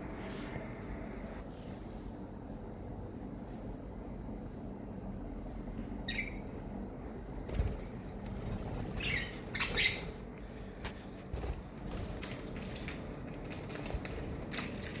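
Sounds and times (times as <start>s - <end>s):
budgies squawking and chirping: 8.8s - 10.2s.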